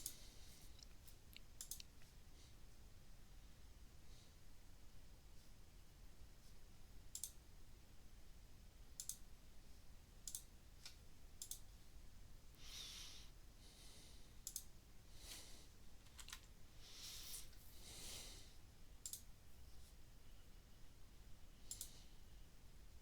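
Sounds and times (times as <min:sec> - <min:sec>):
computer mouse clicks: 0:00.0 - 0:02.1, 0:07.1 - 0:07.4, 0:09.0 - 0:09.3, 0:10.2 - 0:11.7, 0:14.4 - 0:14.7, 0:16.0 - 0:16.6, 0:19.0 - 0:19.3, 0:21.6 - 0:22.0.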